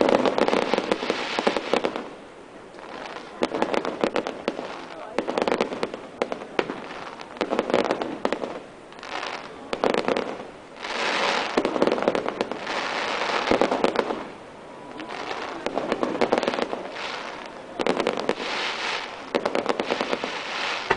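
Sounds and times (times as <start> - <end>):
fireworks crackle and hiss: 0.0 - 20.9
fireworks crackling and popping: 0.0 - 20.9.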